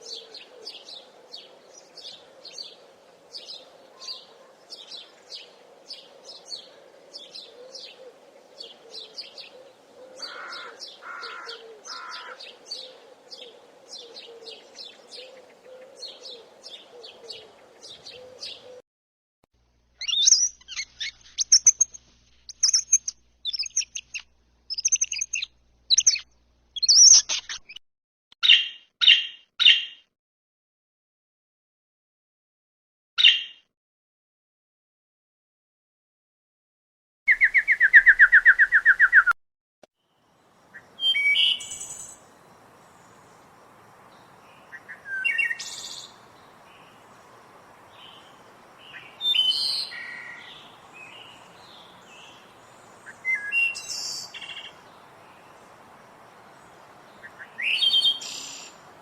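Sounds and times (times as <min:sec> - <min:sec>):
birdsong with rapid trills: 0:00.0 - 0:18.8, 0:20.0 - 0:27.8, 0:40.1 - 0:59.0
lower louder bird calls: 0:00.0 - 0:18.8, 0:20.0 - 0:27.8, 0:40.1 - 0:59.0
songbirds chirping: 0:00.0 - 0:18.8, 0:20.0 - 0:27.8, 0:40.0 - 0:59.0.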